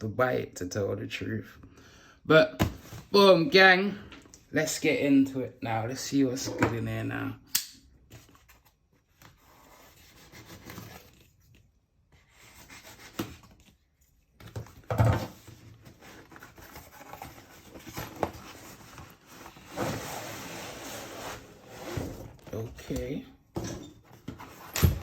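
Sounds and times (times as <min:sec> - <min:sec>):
cardboard rubbing and scraping: 0:09.4 - 0:11.4, 0:15.3 - 0:22.7.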